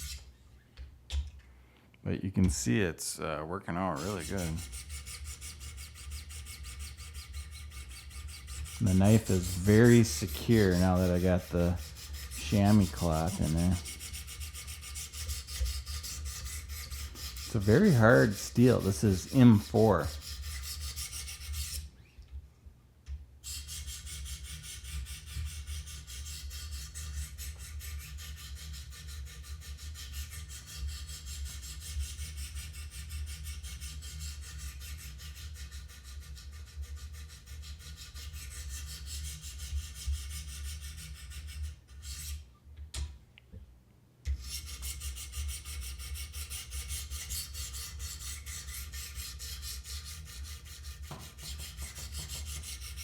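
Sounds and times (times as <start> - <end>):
sharpening stone scraping knife: 0.0 - 0.3, 4.0 - 21.9, 44.4 - 53.0.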